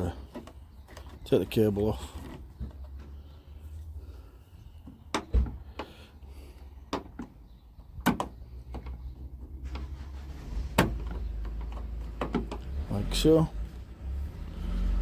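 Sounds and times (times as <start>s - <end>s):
clicks and knocks of door parts: 4.8s - 6.0s, 6.9s - 9.8s, 10.8s - 12.7s.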